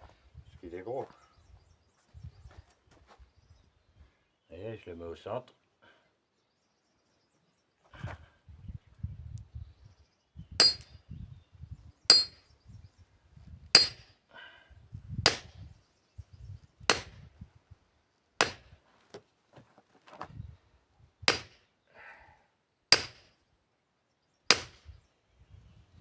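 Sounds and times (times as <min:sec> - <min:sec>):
sledgehammer striking steel wedge: 0:10.6 - 0:10.9, 0:12.1 - 0:12.4, 0:13.8 - 0:14.1, 0:15.3 - 0:15.5, 0:16.9 - 0:17.2, 0:18.4 - 0:18.8, 0:21.3 - 0:21.6, 0:22.9 - 0:23.3, 0:24.5 - 0:24.8.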